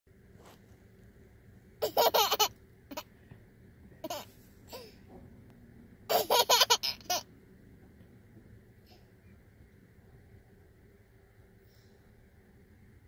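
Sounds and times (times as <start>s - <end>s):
child laughing: 1.8s - 3.0s, 4.0s - 4.9s, 6.1s - 7.3s.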